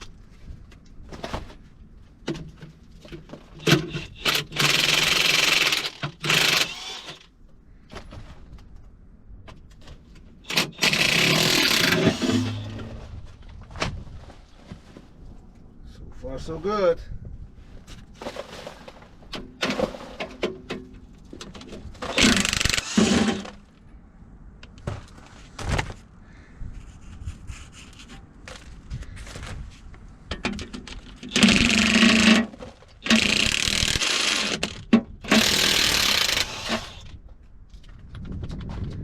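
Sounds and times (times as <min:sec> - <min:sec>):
impact wrench running: 0:03.7 - 0:07.3, 0:10.5 - 0:12.8, 0:22.1 - 0:23.6, 0:31.3 - 0:37.1.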